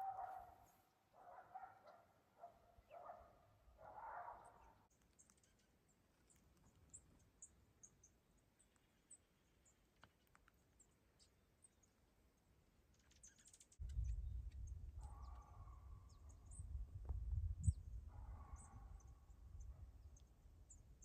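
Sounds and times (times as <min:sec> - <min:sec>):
small birds chirping: 0:00.0 - 0:21.0
low rumble on microphone: 0:13.8 - 0:20.0.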